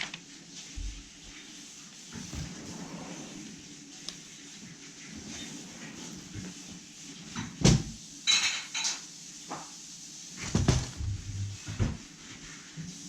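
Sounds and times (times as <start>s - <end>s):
scraping clatter: 2.1s - 3.7s, 5.0s - 7.8s.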